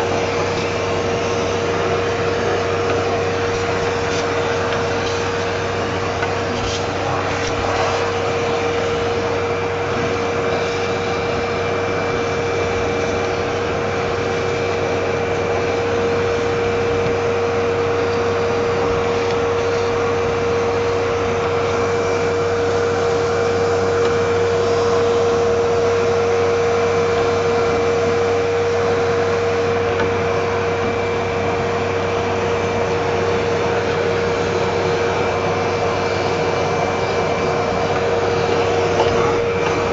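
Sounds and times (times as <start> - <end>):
vacuum cleaner humming: 0.0 - 39.9.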